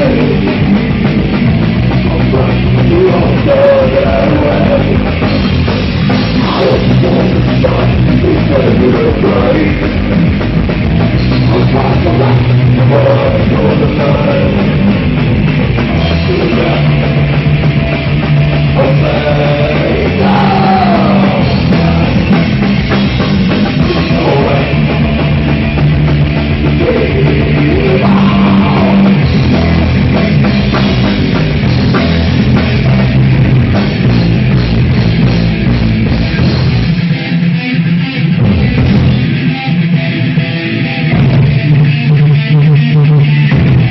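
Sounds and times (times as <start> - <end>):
bass guitar: 0.0 - 43.9
drum kit: 0.0 - 43.9
electric guitar: 0.0 - 43.9.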